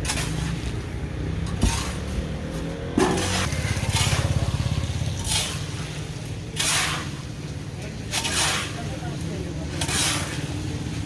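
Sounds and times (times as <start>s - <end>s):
small vehicle engine running: 1.8s - 6.0s.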